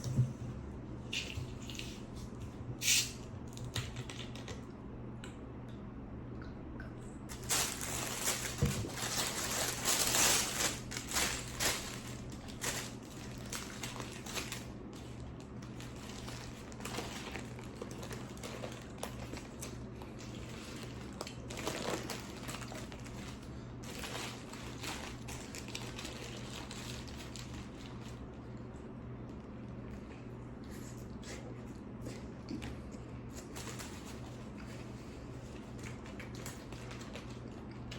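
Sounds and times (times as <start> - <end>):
faint steady hum: 0.0 - 37.9
paper crinkling: 7.3 - 28.2, 33.4 - 37.9
food squishing and crunching: 7.3 - 28.7.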